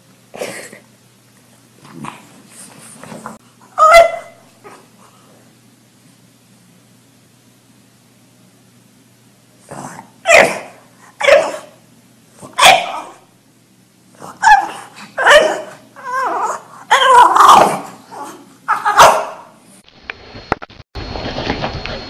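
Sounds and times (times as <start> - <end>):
dog barking: 3.8 - 4.4, 10.3 - 11.8, 12.6 - 13.2, 14.4 - 15.8, 18.7 - 19.5.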